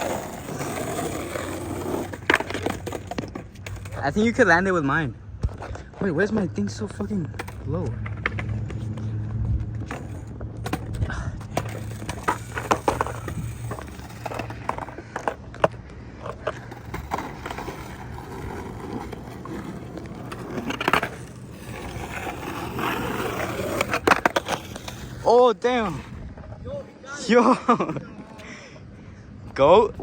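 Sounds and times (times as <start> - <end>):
skateboard wheels rolling on wet pavement: 0.0 - 4.2, 7.4 - 26.1
skateboard clacking on ground: 0.0 - 4.3, 5.4 - 25.3.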